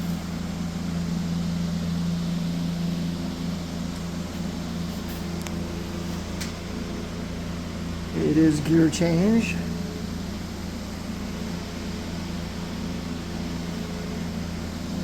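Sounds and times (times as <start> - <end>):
steady mechanical hum: 0.0 - 15.0.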